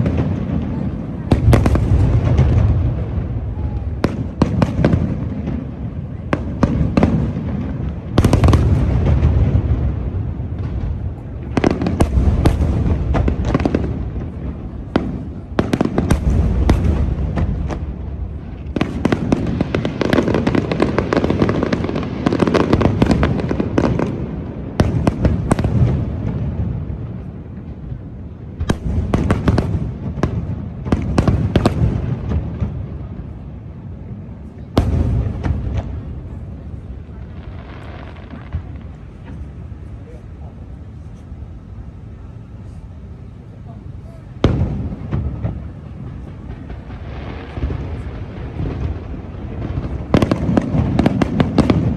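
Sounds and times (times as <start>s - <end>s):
continuous low rumble: 0.0s - 51.9s
fireworks bursting with sharp bangs: 0.0s - 51.9s.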